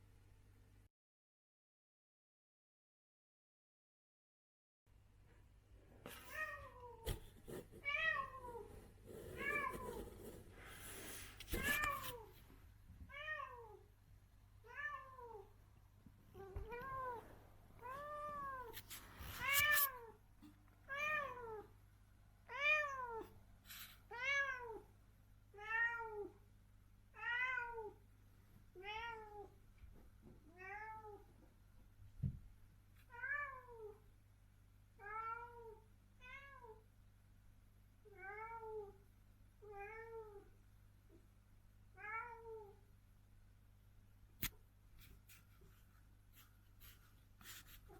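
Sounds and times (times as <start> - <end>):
rustling: 5.9 - 12.6, 16.6 - 20.1.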